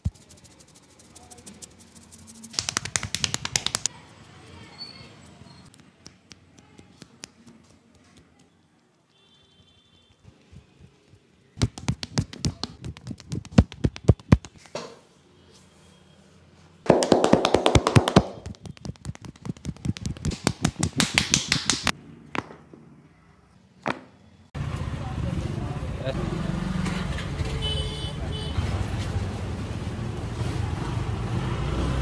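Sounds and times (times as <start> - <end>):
rapid hand slaps on head: 1.9 - 3.9, 11.6 - 14.8, 16.9 - 21.9.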